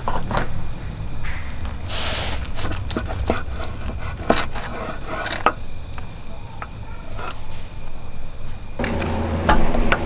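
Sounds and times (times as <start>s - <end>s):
knocks and clicks of handling: 8.8s - 10.0s.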